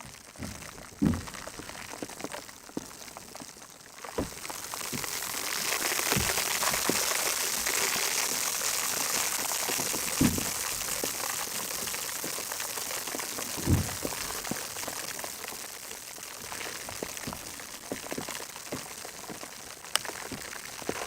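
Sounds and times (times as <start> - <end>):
dull knocks: 0.4 - 1.4, 4.2 - 4.4, 10.2 - 10.5, 13.6 - 14.1
food sizzling in hot oil: 4.0 - 19.1.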